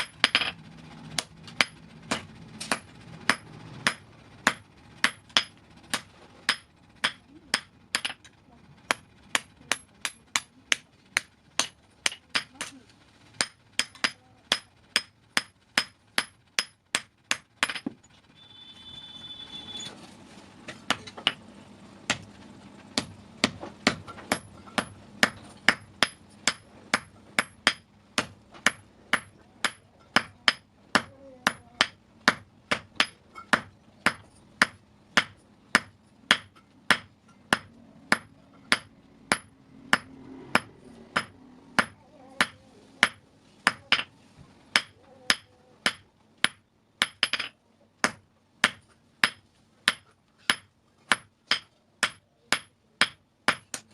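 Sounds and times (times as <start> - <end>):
hammer striking steel on anvil: 1.2 - 12.7, 13.4 - 18.0, 23.0 - 44.1.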